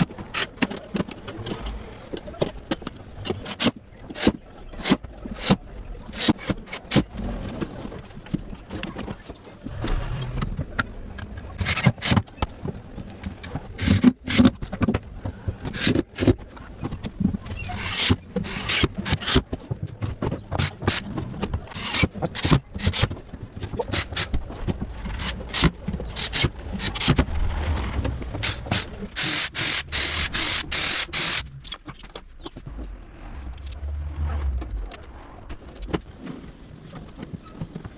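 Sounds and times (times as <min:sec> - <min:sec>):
scraping on wood: 0:13.4 - 0:32.6.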